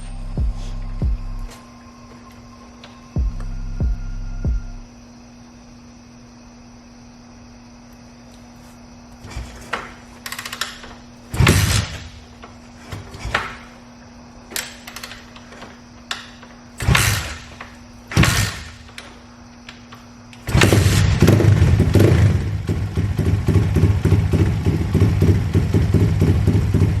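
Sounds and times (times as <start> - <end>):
motorbike engine cranking: 9.1 - 27.0
motorbike engine running: 20.4 - 27.0.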